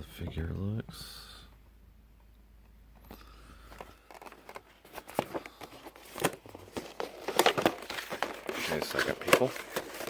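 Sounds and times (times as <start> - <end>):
packaging crinkling and clicking: 3.6 - 10.0.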